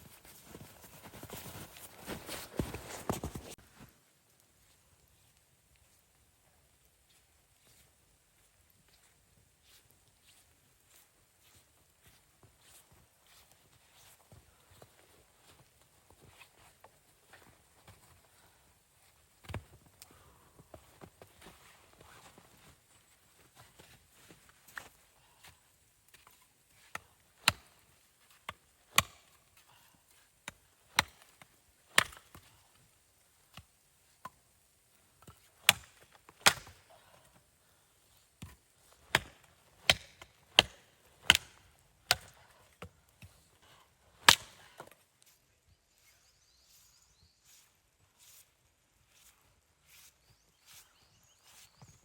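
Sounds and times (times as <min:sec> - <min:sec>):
wood being chopped: 0:28.9 - 0:29.3, 0:30.9 - 0:32.4, 0:35.6 - 0:36.8, 0:38.4 - 0:42.4, 0:44.2 - 0:45.0.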